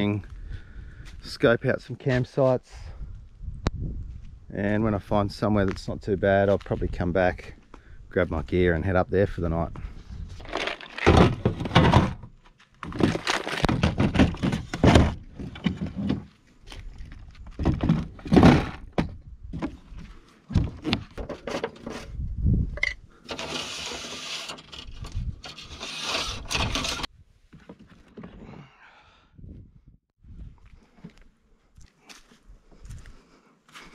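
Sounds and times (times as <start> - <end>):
gear thunking and scraping: 10.2 - 28.5.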